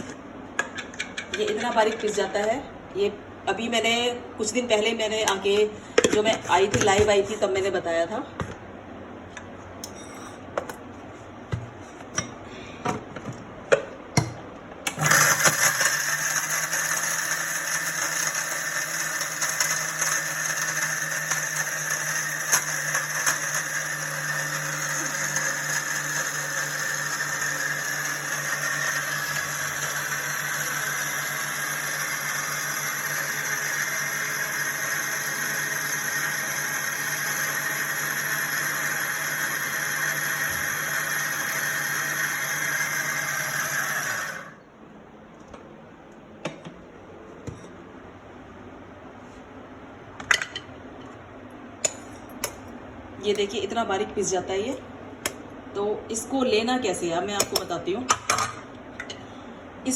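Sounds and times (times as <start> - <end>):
mixer grinder grinding spices: 14.9 - 44.6.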